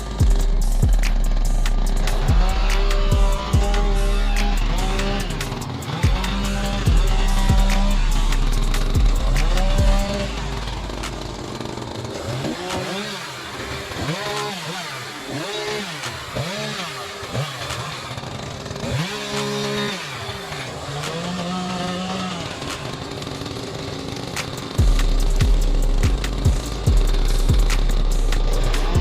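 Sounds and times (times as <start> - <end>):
loud low hum: 0.0 - 12.7, 24.7 - 29.0
chainsaw engine revving: 0.0 - 29.0.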